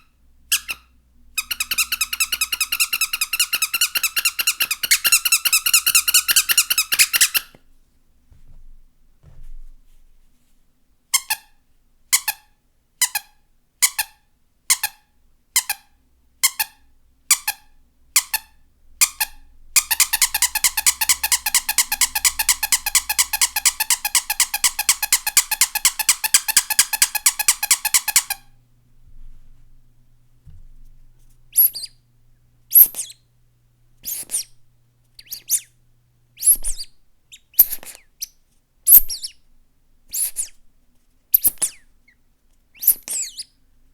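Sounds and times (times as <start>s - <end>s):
squeaky toys squeaking: 0.5s - 7.5s, 18.2s - 28.5s, 31.6s - 32.0s.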